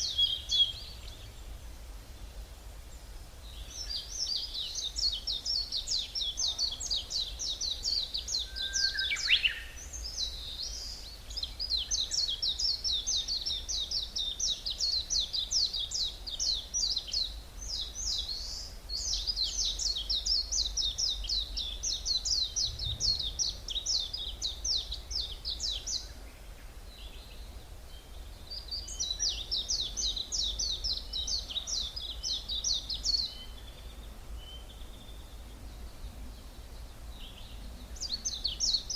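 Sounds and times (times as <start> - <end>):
songbirds chattering: 0.0 - 1.6, 2.2 - 38.9
low rumble: 22.6 - 23.8.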